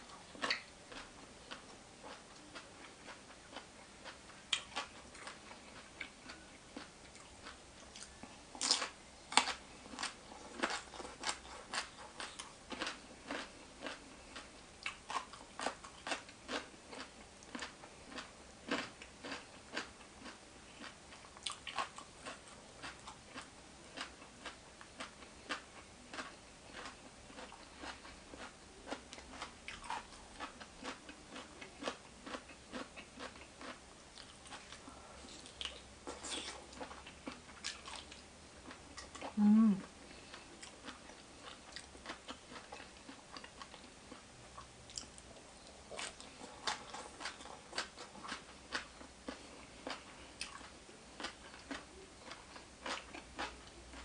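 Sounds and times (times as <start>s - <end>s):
person chewing and crunching food: 0.0s - 54.0s.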